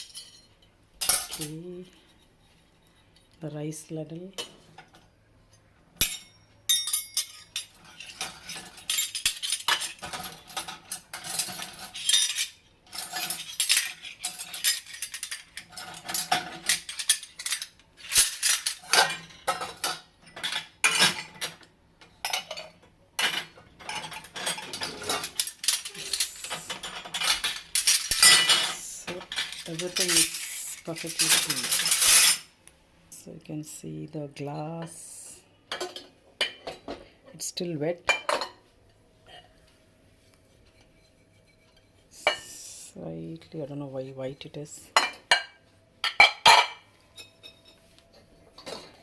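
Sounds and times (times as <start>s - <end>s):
dishes and utensils clinking: 6.0s - 32.5s, 44.9s - 49.0s.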